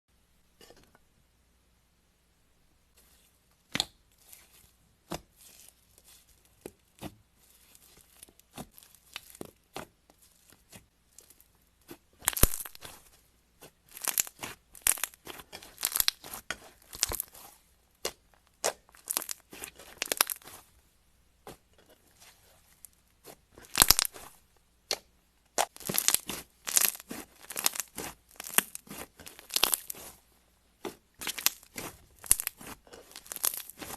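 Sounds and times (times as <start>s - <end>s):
slime crackling pops: 12.2s - 12.8s, 23.7s - 24.3s, 25.6s - 30.1s, 31.2s - 33.9s.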